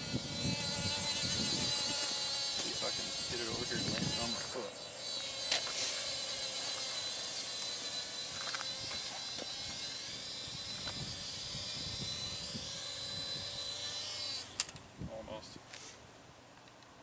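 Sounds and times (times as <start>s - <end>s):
wind rumble on microphone: 0.0s - 2.1s, 2.9s - 4.3s, 10.5s - 13.7s
quadcopter motors whining: 0.0s - 15.5s.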